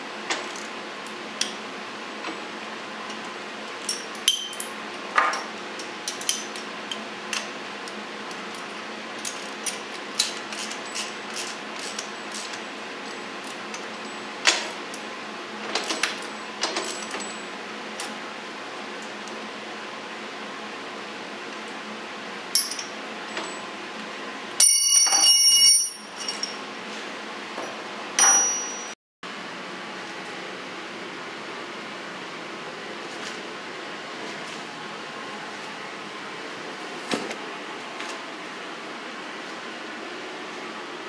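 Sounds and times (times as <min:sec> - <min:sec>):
steady background hum: 0:00.0 - 0:41.0
metallic clinks of hand tools: 0:24.6 - 0:26.6, 0:28.2 - 0:28.9.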